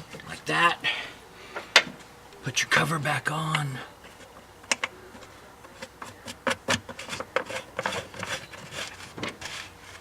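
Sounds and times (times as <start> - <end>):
parts rubbing together: 4.0 - 10.0.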